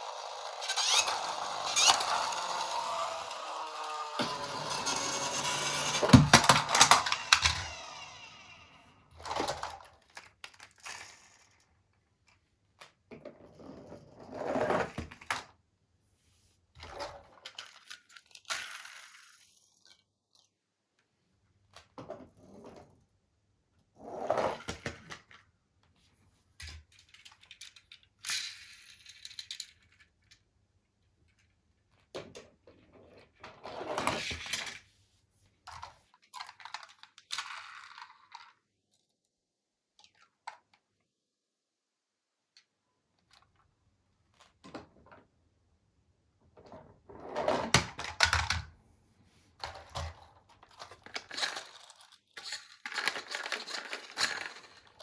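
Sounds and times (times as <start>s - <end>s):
toy vehicles clattering: 0.0s - 12.9s, 16.8s - 20.0s, 26.6s - 30.5s, 31.2s - 34.8s, 35.7s - 39.0s, 49.6s - 55.0s.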